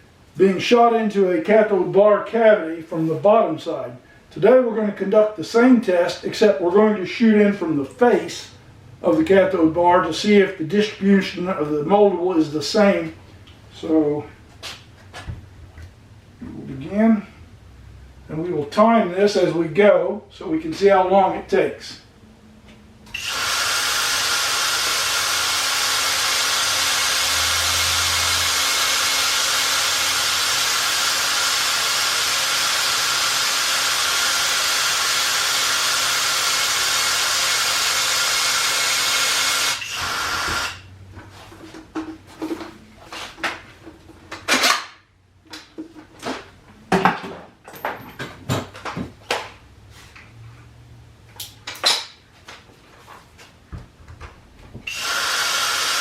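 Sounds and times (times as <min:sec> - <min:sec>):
caulking gun motor whining: 0:23.1 - 0:40.9, 0:54.8 - 0:56.0.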